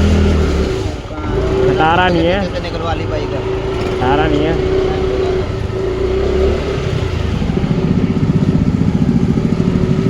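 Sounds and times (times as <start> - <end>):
motorcycle engine running: 0.0 - 10.0
rapid exhaust pulse: 0.0 - 10.0.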